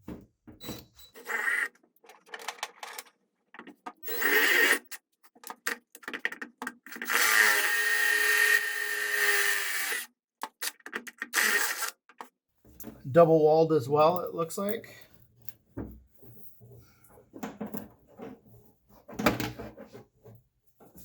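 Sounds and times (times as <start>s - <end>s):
power drill boring sheet metal: 4.0s - 4.8s, 7.0s - 10.0s.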